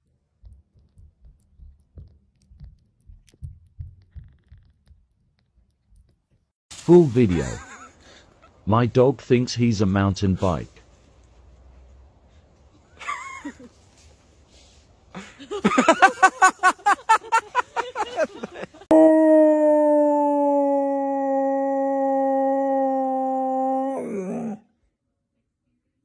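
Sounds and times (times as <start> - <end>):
dog howling: 18.9 - 24.7.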